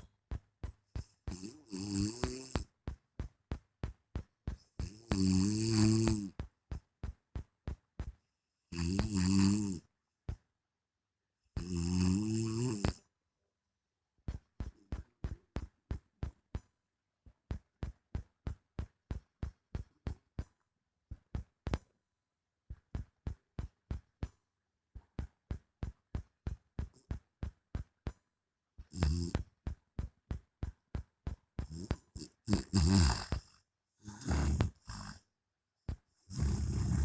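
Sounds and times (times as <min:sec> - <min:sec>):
person snoring: 0:01.2 - 0:02.7, 0:04.8 - 0:06.4, 0:08.7 - 0:09.9, 0:11.6 - 0:13.1, 0:28.9 - 0:29.4, 0:31.6 - 0:35.3, 0:36.3 - 0:37.0.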